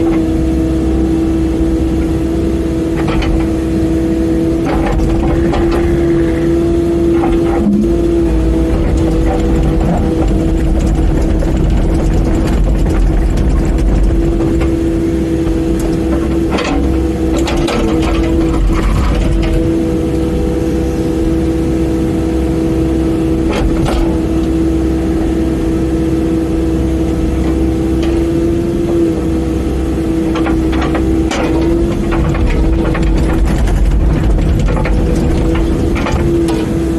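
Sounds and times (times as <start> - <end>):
excavator engine whine: 0.0 - 36.9
metal knocks and clanks: 8.7 - 19.7, 30.3 - 36.7.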